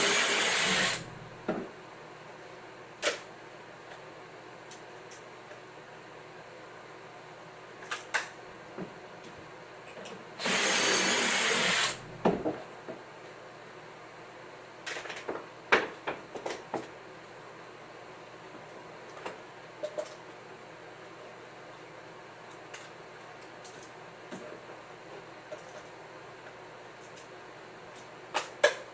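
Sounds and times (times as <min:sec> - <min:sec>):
power tool burst: 0:00.0 - 0:01.3, 0:10.4 - 0:12.2.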